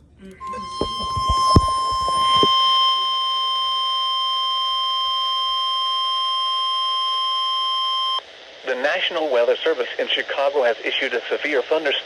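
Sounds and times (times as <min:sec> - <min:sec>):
steady electronic alarm tone: 0:00.4 - 0:08.2.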